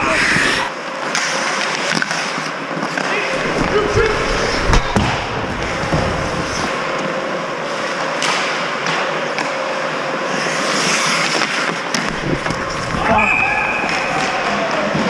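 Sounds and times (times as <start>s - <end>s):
skate blades scraping on ice: 0.0s - 6.7s, 10.2s - 15.0s
sticks and puck clacking: 0.0s - 7.1s, 7.8s - 15.0s.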